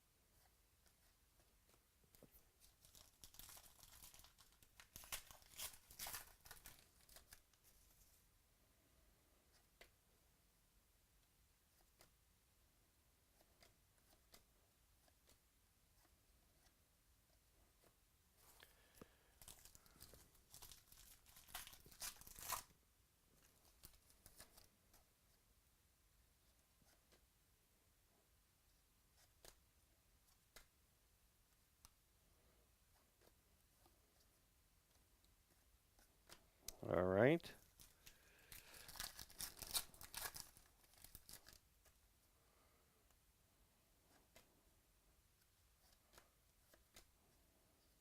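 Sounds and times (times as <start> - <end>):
pack wrapper crinkling and tearing: 2.6 - 7.6, 19.4 - 22.7, 37.7 - 41.6.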